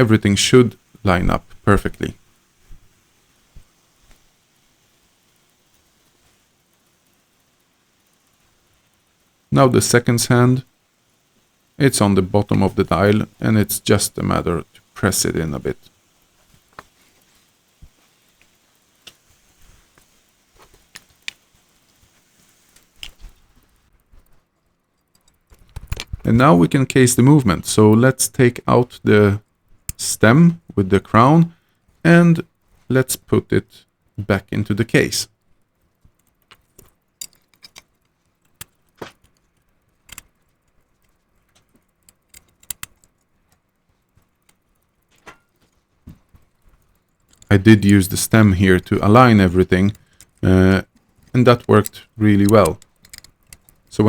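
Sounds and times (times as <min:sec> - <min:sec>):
metal tools clicking and tapping: 0:24.2 - 0:26.3, 0:36.0 - 0:47.6, 0:48.3 - 0:54.0.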